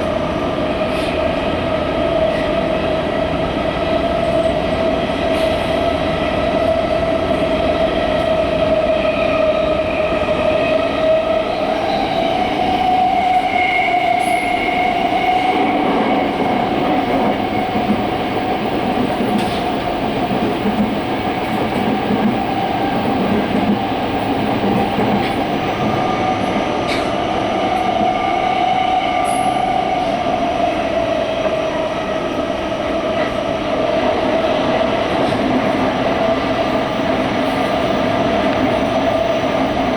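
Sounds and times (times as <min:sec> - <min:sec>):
train wheels rumbling on rail: 0:00.0 - 0:39.9
train whine: 0:00.0 - 0:39.9.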